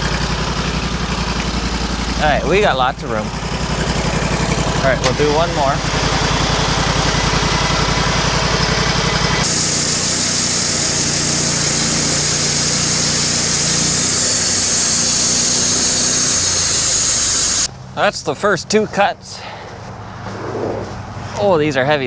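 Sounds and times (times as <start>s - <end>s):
sawmill engine running: 0.0s - 17.8s
saw cutting log high hiss: 9.4s - 17.7s.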